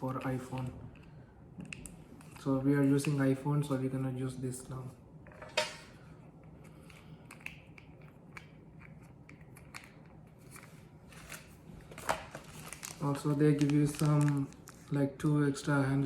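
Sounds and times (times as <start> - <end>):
packaging rustling: 10.4 - 14.9.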